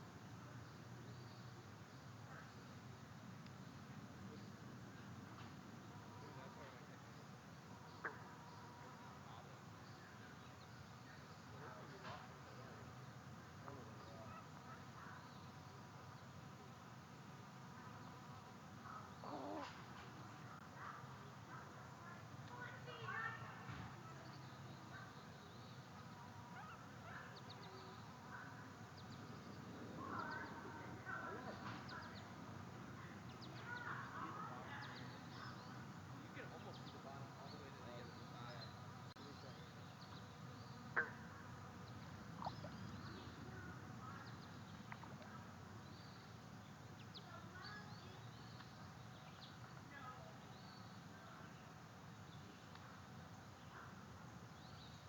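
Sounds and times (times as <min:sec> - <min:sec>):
small birds chirping: 0:17.8 - 0:55.0.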